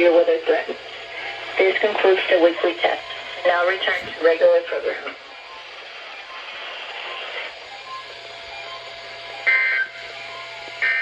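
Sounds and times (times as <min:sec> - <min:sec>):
radio static hiss: 0:00.4 - 0:05.2.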